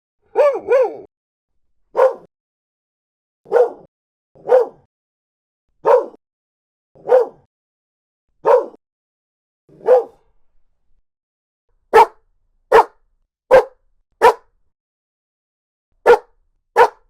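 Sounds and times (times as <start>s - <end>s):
dog barking: 0.3s - 1.1s, 1.9s - 2.3s, 3.4s - 4.9s, 5.8s - 6.2s, 7.0s - 7.5s, 8.4s - 8.8s, 9.7s - 10.2s, 11.9s - 14.5s, 16.0s - 17.0s.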